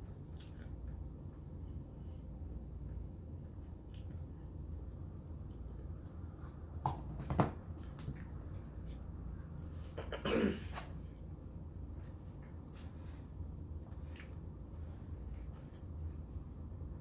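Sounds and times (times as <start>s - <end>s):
low steady hum: 0.0s - 17.0s
chewing with wet mouth clicks: 3.7s - 4.4s.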